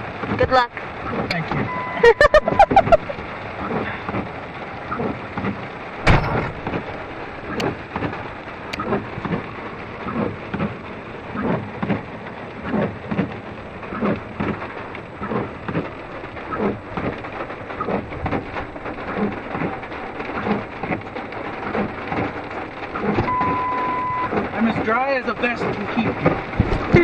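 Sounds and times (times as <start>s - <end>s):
heavy rain falling: 0.0s - 27.0s.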